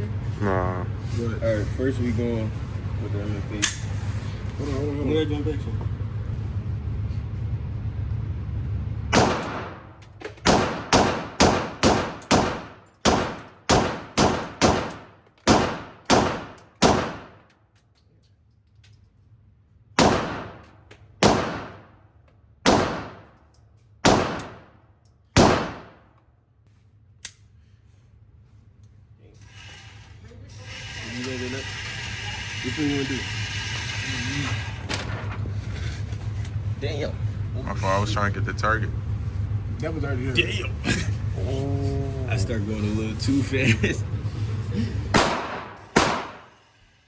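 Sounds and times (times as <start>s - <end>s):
pistol shots: 9.1s - 17.4s, 20.0s - 22.0s, 22.6s - 23.4s, 24.0s - 24.8s, 25.4s - 26.1s, 45.1s - 46.6s.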